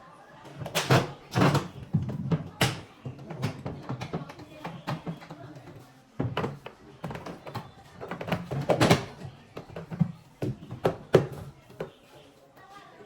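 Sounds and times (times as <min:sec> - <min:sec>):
knocks taps and clatters: 0:00.6 - 0:12.0.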